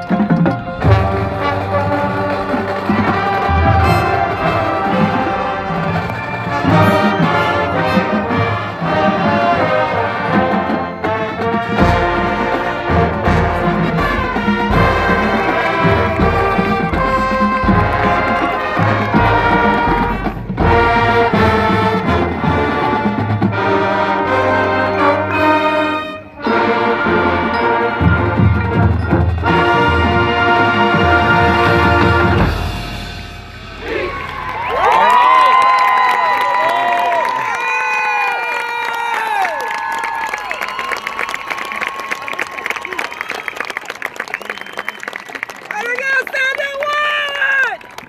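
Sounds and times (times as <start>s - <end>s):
marching band brass playing: 0.0s - 47.2s.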